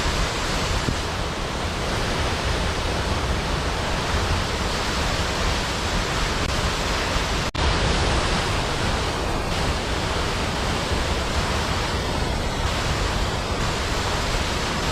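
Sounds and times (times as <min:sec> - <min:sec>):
waterfall roaring: 0:00.0 - 0:14.9.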